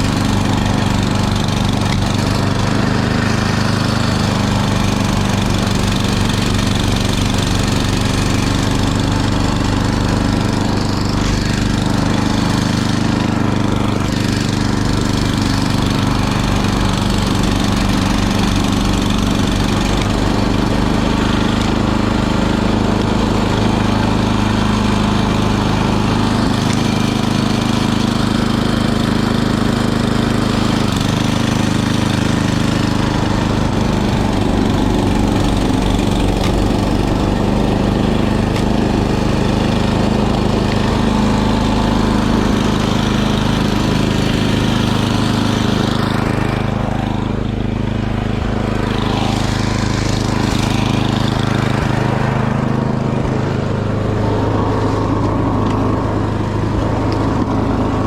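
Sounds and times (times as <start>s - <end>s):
snowblower engine running: 0.0s - 58.0s.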